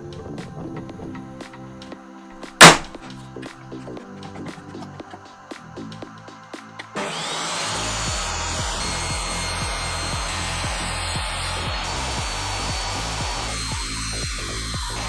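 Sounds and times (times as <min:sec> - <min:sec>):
background music with beat: 0:00.0 - 0:07.2, 0:08.0 - 0:15.0
power tool motor whine: 0:07.0 - 0:15.0.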